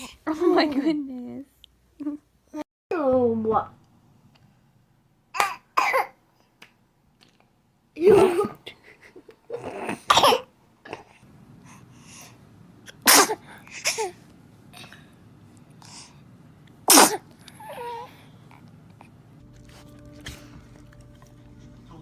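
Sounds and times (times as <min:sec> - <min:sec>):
baby sneezing: 0:09.6 - 0:10.5, 0:13.0 - 0:14.2, 0:16.9 - 0:17.3.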